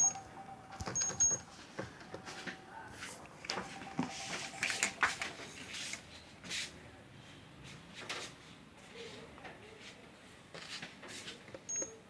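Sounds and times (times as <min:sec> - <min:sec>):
high electronic beep: 0:00.0 - 0:05.5.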